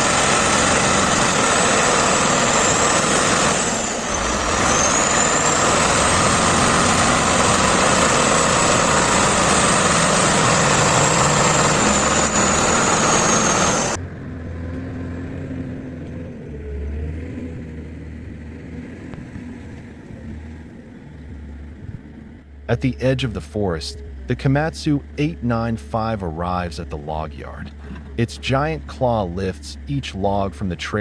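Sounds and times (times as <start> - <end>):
high steady whine: 0.0 - 14.0, 21.8 - 31.0
heavy diesel engine running: 0.0 - 31.0.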